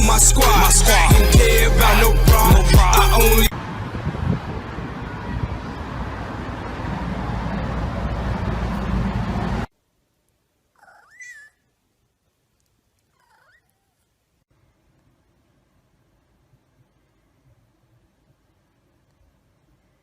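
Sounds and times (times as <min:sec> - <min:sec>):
loud dense noise: 0:00.0 - 0:09.7
cat meowing: 0:13.2 - 0:14.0.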